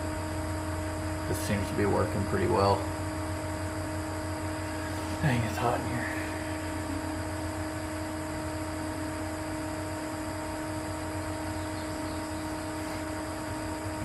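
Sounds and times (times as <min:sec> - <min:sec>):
electric motor humming: 0:00.0 - 0:14.0.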